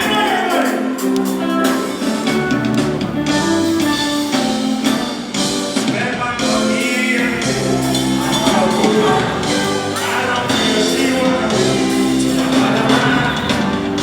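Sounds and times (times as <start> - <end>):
live band music: 0.0 - 14.0
person singing: 5.7 - 14.0.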